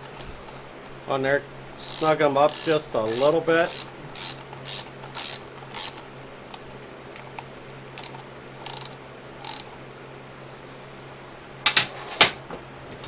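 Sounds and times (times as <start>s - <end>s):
ratchet wrench clicking: 1.8s - 6.0s, 8.0s - 9.7s.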